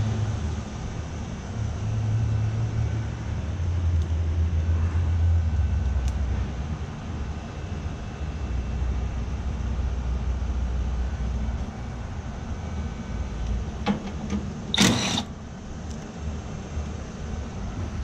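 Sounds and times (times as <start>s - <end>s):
air conditioner units humming: 5.4s - 18.0s.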